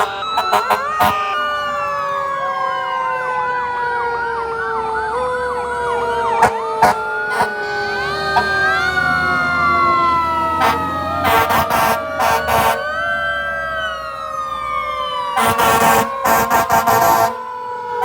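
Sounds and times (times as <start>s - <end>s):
loud horn blasts: 0.0s - 1.5s, 10.5s - 12.8s, 15.4s - 17.4s
emergency sirens wailing: 0.0s - 18.0s.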